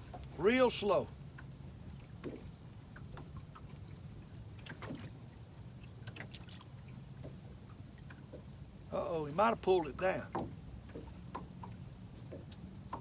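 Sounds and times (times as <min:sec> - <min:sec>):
faint light ticks: 0:01.3 - 0:08.7, 0:10.3 - 0:13.0.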